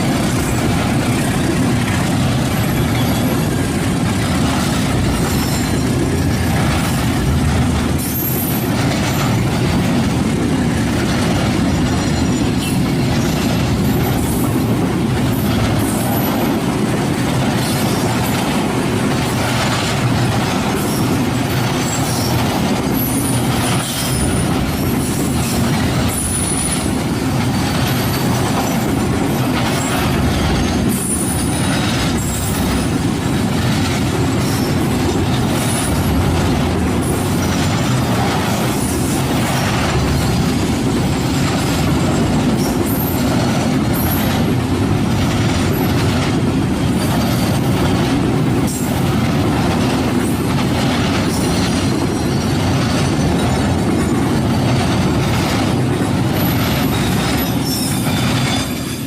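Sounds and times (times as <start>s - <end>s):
train rumbling over rails: 0.0s - 59.0s
high-pitched wheel squeals: 56.4s - 59.0s.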